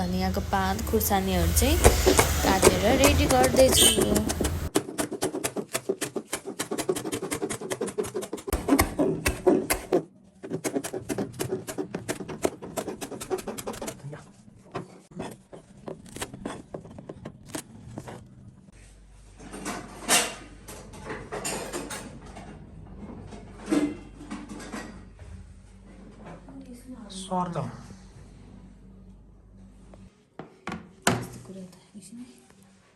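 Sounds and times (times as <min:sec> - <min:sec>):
knife chopping on cutting board: 0:01.7 - 0:14.1, 0:14.8 - 0:18.1.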